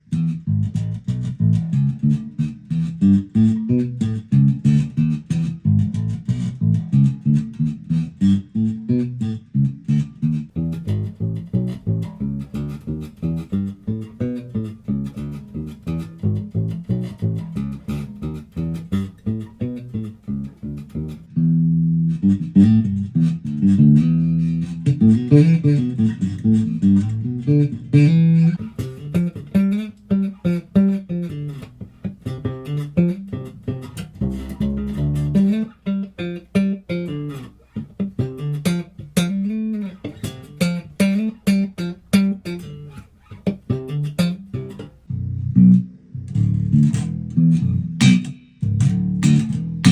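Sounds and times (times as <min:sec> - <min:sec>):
electric bass plucked notes: 0:00.0 - 0:49.9.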